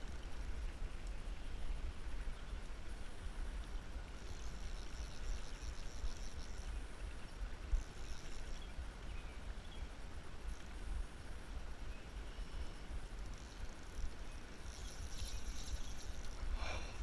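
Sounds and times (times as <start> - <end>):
faint high twittering: 3.6 - 10.7, 11.8 - 17.0
even hiss: 12.2 - 17.0.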